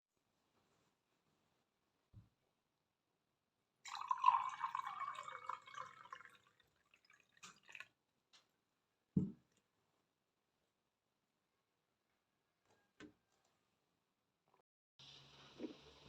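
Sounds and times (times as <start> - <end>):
liquid pouring into container: 3.9 - 8.0.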